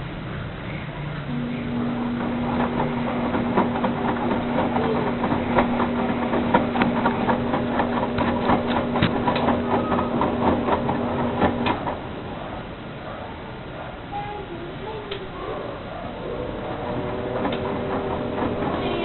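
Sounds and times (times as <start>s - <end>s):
washing machine motor hum: 0.0s - 19.0s
washing machine clicks and knocks: 1.8s - 12.3s.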